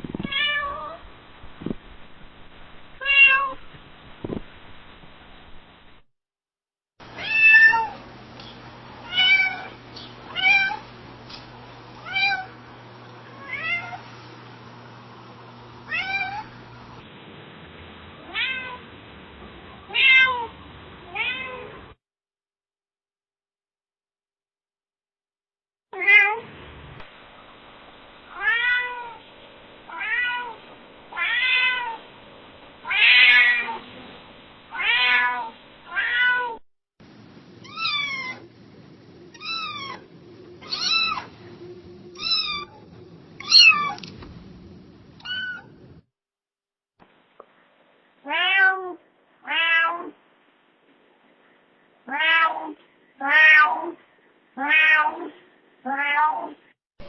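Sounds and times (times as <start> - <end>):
cat meowing: 0.2 - 1.0, 3.0 - 3.6, 7.2 - 8.0, 9.0 - 10.8, 15.9 - 16.5, 18.2 - 18.8, 19.9 - 20.5, 21.1 - 21.8, 28.3 - 29.2, 29.9 - 32.0, 32.8 - 33.8, 34.7 - 36.6, 37.6 - 38.5, 39.3 - 40.0, 40.6 - 41.3, 42.2 - 42.8, 43.4 - 44.1, 45.2 - 45.7, 48.3 - 50.1, 52.1 - 54.0, 54.6 - 55.3, 55.9 - 56.6.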